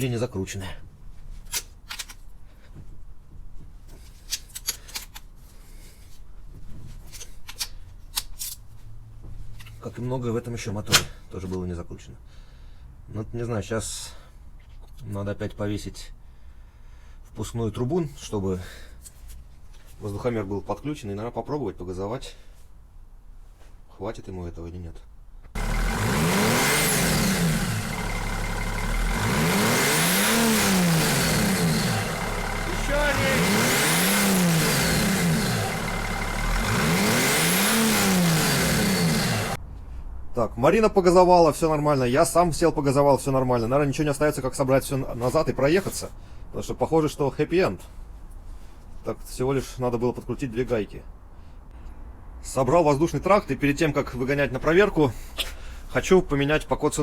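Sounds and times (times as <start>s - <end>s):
diesel engine revving: 25.6s - 39.6s.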